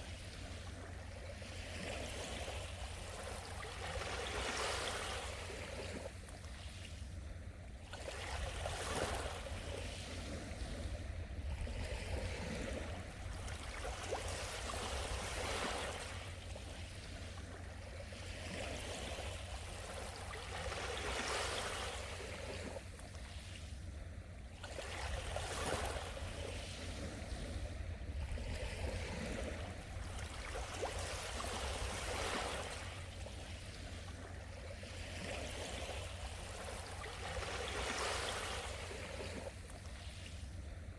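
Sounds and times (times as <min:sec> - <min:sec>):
sea waves washing on shore: 0:00.0 - 0:40.9.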